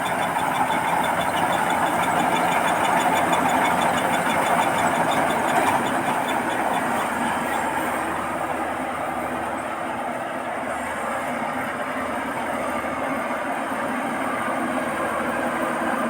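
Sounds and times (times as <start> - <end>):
fast regular ticking: 0.0 - 8.0
combine harvester drone: 0.0 - 16.0.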